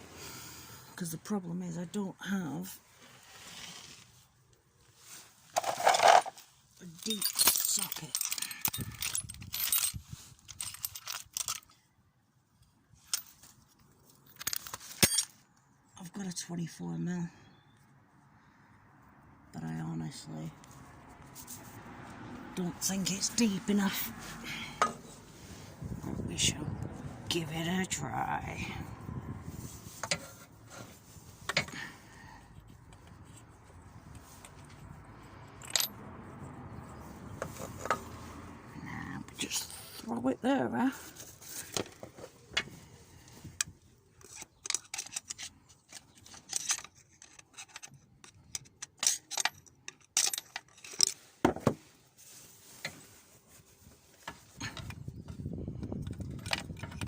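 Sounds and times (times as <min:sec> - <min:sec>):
metal hand tools clinking: 0:06.9 - 0:11.7, 0:14.3 - 0:15.4
tools clinking on metal: 0:07.0 - 0:11.7, 0:14.3 - 0:15.4, 0:35.6 - 0:36.0, 0:44.2 - 0:51.2.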